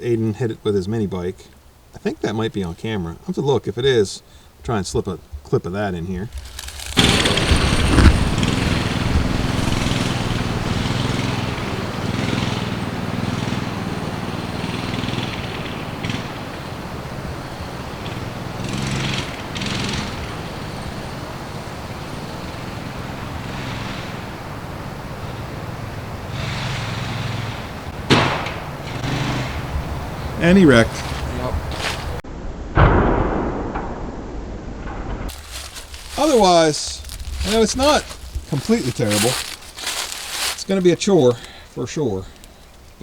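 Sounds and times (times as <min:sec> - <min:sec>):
small engine running: 0:06.5 - 0:16.2.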